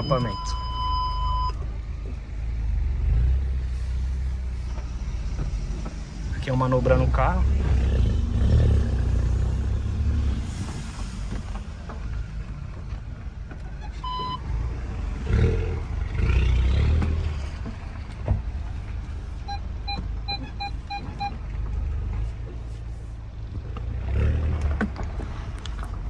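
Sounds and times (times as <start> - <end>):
electronic beeps: 0.0 - 1.6, 14.0 - 14.5, 19.4 - 21.4
car engine rumbling: 0.0 - 26.0.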